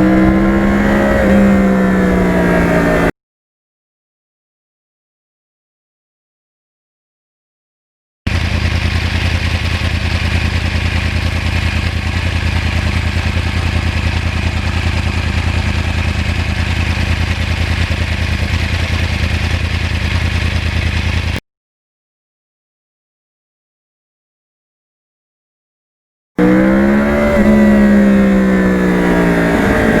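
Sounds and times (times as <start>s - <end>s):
motorcycle engine idling: 8.3s - 21.4s.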